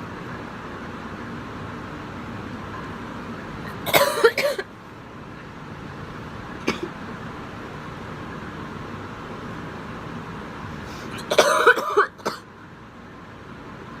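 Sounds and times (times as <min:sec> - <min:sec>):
steady background hiss: 0:00.0 - 0:14.0
woman coughing: 0:03.7 - 0:04.7, 0:06.6 - 0:07.0, 0:11.2 - 0:12.4.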